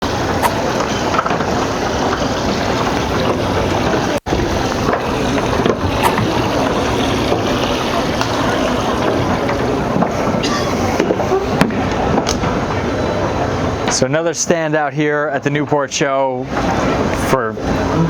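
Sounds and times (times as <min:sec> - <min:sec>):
boat rushing through water: 0:00.0 - 0:18.0.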